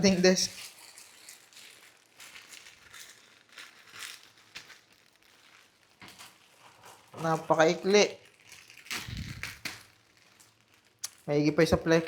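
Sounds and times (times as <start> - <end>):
plastic packaging rustling: 0.0 - 12.0.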